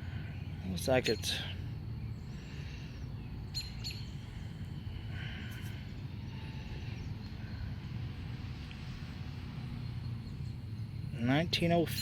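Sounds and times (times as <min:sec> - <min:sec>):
low outdoor rumble: 0:00.0 - 0:12.0
faint bird chirps: 0:00.2 - 0:07.8.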